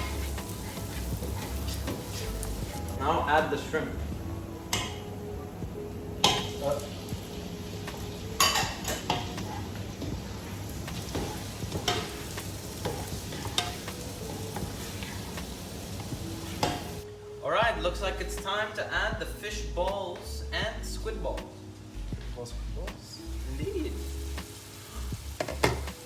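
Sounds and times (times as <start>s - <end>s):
utensil scraping a pan: 0.0s - 2.8s, 11.1s - 15.4s
shrimp sizzling in a pan: 0.0s - 2.9s, 6.2s - 17.0s, 23.2s - 26.0s.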